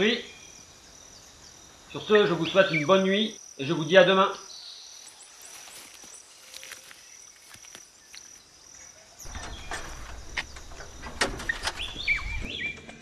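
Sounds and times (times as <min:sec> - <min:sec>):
insects trilling: 0:00.0 - 0:12.7
rustling with low rumble: 0:09.2 - 0:13.0.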